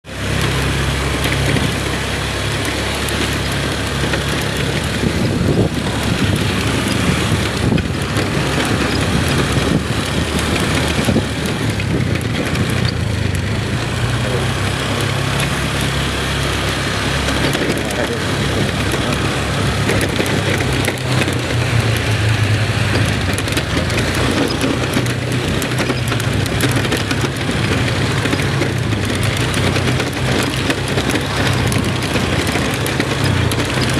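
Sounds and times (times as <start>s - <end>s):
constant rushing noise: 0.0s - 33.9s
vehicle engine running: 0.0s - 33.9s.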